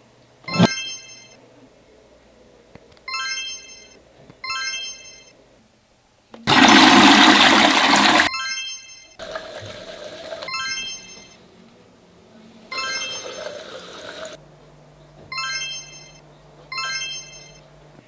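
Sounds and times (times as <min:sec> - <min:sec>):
bright electronic chimes: 0:12.8 - 0:13.6, 0:16.8 - 0:17.6.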